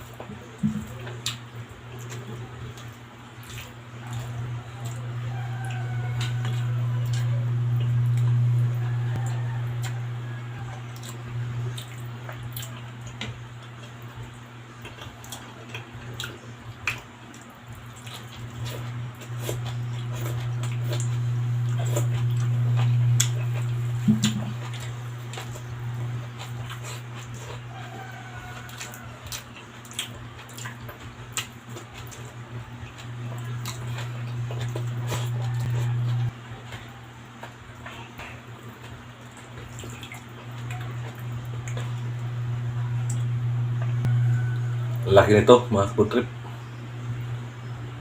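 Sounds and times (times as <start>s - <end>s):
wet chewing and smacking: 0.0s - 45.0s
low hum: 3.8s - 14.8s, 18.4s - 27.8s, 32.5s - 37.1s, 39.8s - 48.0s.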